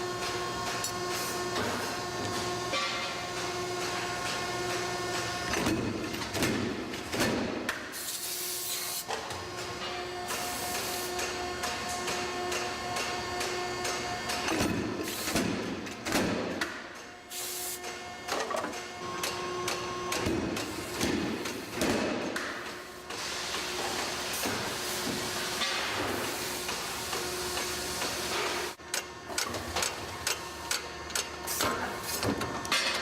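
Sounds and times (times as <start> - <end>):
machinery clanks and knocks: 1.5 - 4.5, 5.1 - 7.8, 11.1 - 17.2, 17.8 - 22.8.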